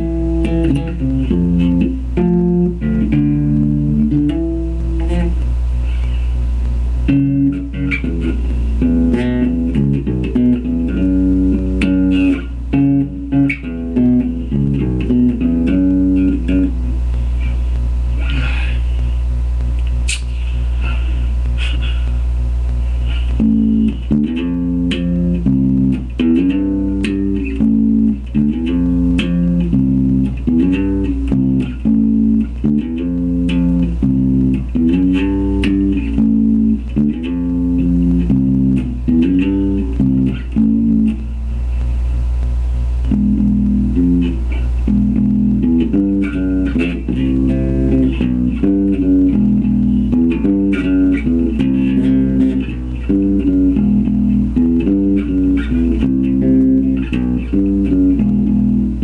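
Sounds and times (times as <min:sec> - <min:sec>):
electric bass guitar riff: 0:00.0 - 0:59.0
low amplifier hum: 0:00.0 - 0:59.0.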